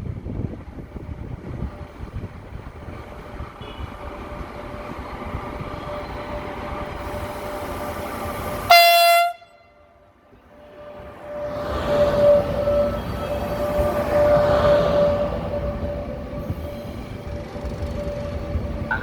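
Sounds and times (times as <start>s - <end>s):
electric train rumble and whine: 0.0s - 19.0s
train horn blast: 8.6s - 10.0s, 10.6s - 19.0s.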